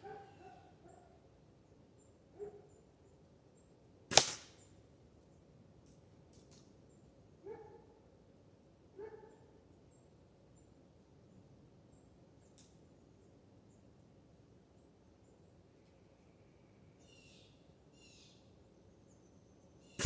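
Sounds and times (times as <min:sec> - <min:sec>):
faint animal calls: 0:00.0 - 0:01.2
air rifle shot: 0:04.1 - 0:04.6.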